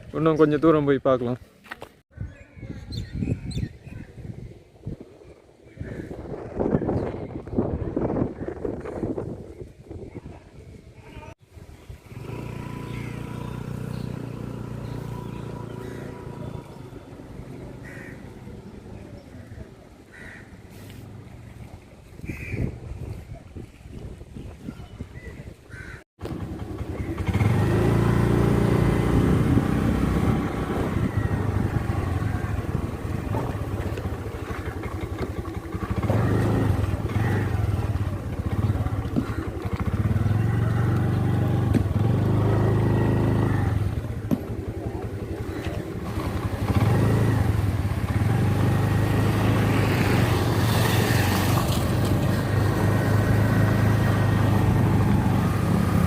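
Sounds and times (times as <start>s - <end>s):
motorcycle engine revving: 11.9s - 19.6s, 26.2s - 56.0s.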